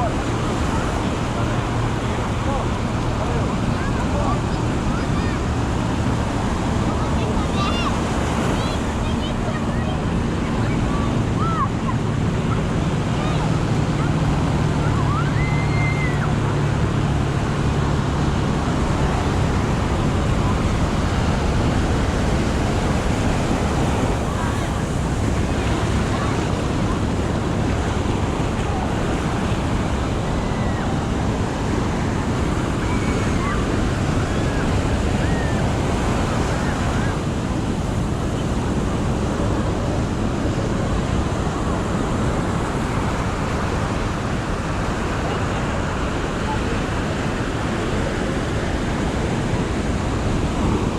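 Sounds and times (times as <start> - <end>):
ocean surf: 0.0 - 50.9
rushing outdoor noise: 0.0 - 50.9
wind on microphone: 0.0 - 50.9
heavy low rumble: 16.3 - 37.8.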